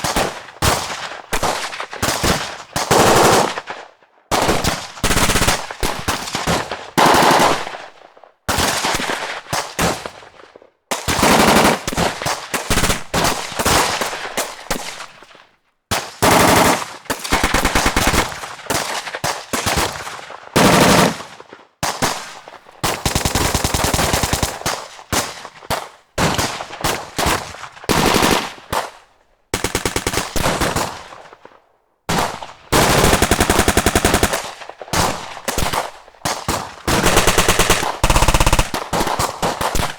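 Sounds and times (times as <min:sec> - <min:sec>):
automatic gunfire bursts: 0:00.0 - 0:03.7, 0:04.3 - 0:07.9, 0:11.0 - 0:14.4, 0:16.2 - 0:18.9, 0:20.6 - 0:21.3, 0:27.3 - 0:28.6, 0:29.6 - 0:31.1, 0:32.1 - 0:39.9.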